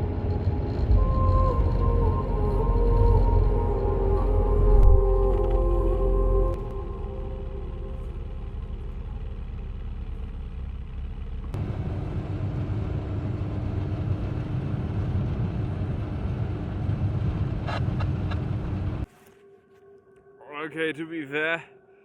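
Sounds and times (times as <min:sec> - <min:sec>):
steady hum: 0:00.0 - 0:10.5
car road and engine rumble: 0:00.0 - 0:19.1.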